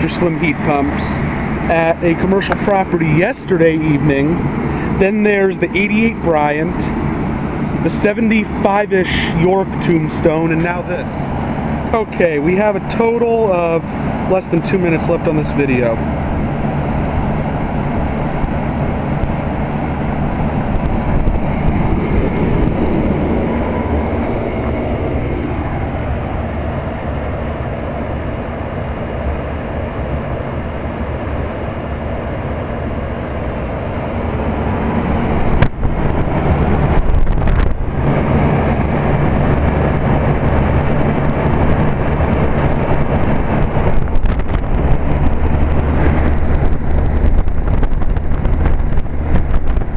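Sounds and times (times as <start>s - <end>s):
compressor hum: 0.0s - 49.9s
fan rushing air: 0.0s - 49.9s.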